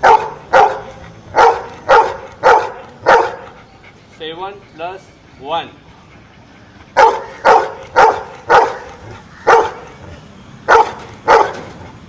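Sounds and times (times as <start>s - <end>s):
dog barking: 0.0s - 3.5s, 7.0s - 9.9s, 10.7s - 11.7s.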